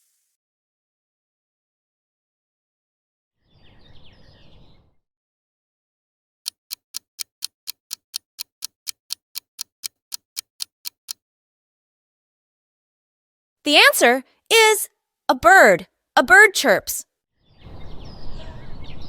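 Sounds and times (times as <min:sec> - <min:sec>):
clock ticking: 0:06.5 - 0:11.2.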